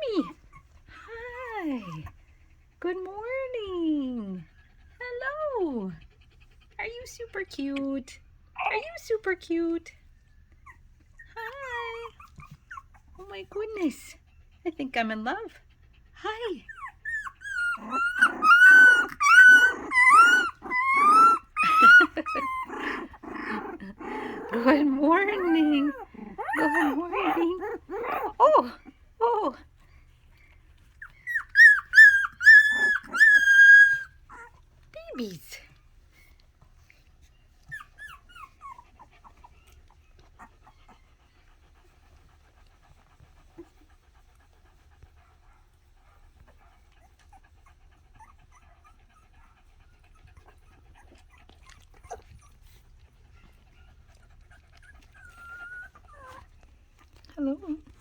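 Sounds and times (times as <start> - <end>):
puppies yowling and whining: 16.7 - 29.0, 30.7 - 34.6, 37.4 - 41.7, 47.1 - 56.9.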